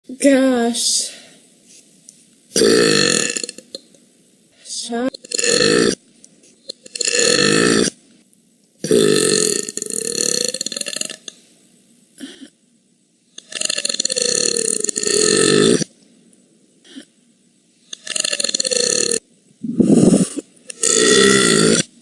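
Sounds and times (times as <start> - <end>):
woman burping loudly: 2.6 - 3.8, 6.7 - 8.0, 17.9 - 21.9.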